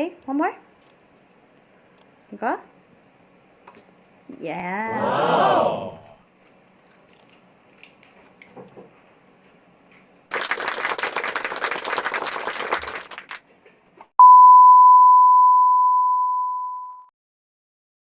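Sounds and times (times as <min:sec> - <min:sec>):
steady single-pitched beep: 0:14.2 - 0:17.1.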